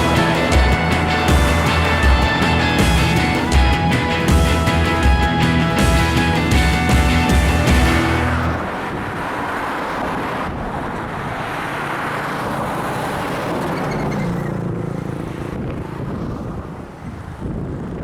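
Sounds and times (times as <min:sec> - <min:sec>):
faint engine hum: 0:00.0 - 0:09.0
road traffic: 0:00.0 - 0:18.0
strong wind: 0:00.0 - 0:18.0.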